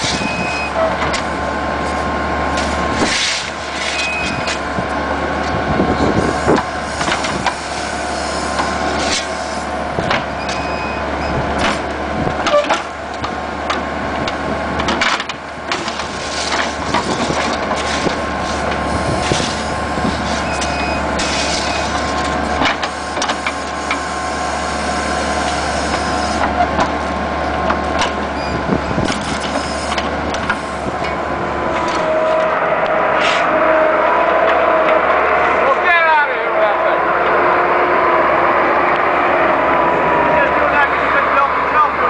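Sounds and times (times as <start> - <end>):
backhoe digging clanks: 0.0 - 32.6
loader engine whining: 0.0 - 42.0.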